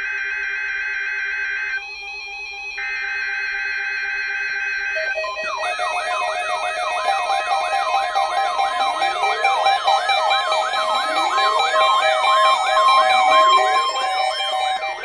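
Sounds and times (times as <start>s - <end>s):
fast yelping siren: 5.0s - 15.0s
rising wailing siren: 5.0s - 15.0s
steady beeping tones: 5.0s - 15.0s.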